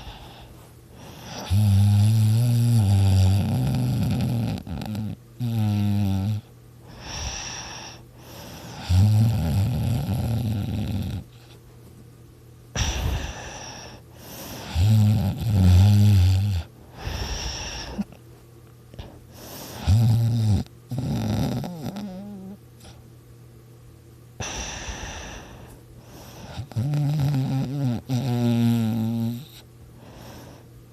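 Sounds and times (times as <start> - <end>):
airy breaths: 0.0 - 1.5, 6.8 - 8.9, 12.8 - 14.8, 16.8 - 18.2, 19.0 - 19.9, 24.4 - 26.7, 29.9 - 30.9
person snoring loudly: 1.0 - 8.0, 8.6 - 11.3, 14.6 - 18.1, 19.7 - 22.6, 26.4 - 30.4.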